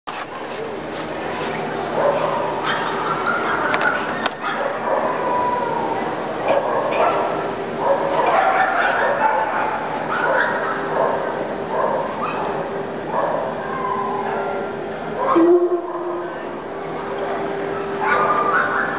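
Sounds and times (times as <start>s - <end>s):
dogs barking and yipping: 1.9s - 14.6s, 18.0s - 18.9s.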